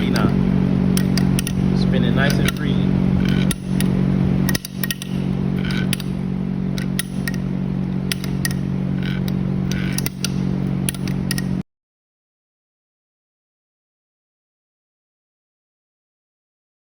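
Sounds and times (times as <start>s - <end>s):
engine parts clicking and clattering: 0.0s - 11.6s
low machine hum: 0.0s - 11.6s.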